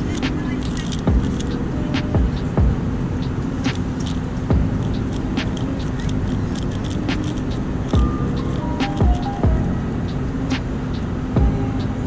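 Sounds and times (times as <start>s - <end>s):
airliner engine and air drone: 0.0s - 12.0s.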